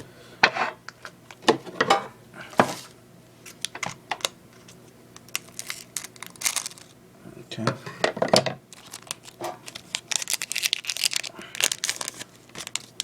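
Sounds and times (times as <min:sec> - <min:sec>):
foil pack crinkling: 0:03.5 - 0:07.0, 0:08.7 - 0:13.0.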